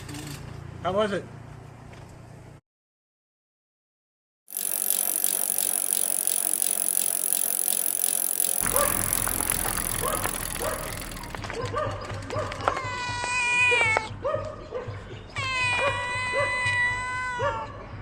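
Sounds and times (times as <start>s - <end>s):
bicycle freewheel ticking: 4.5s - 11.5s.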